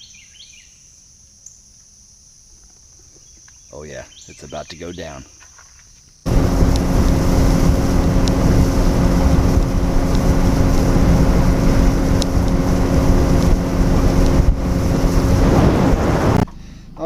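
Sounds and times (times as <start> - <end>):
wind buffeting microphone: 6.3 - 16.5
outboard motor running: 6.3 - 16.8.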